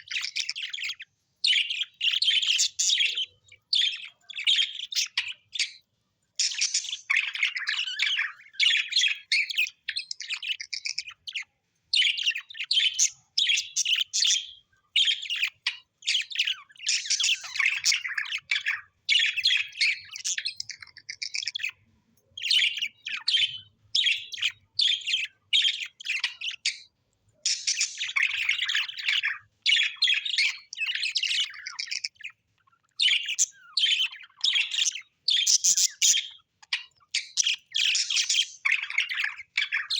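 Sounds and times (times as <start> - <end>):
parrots chattering and chirping: 0.0 - 39.9.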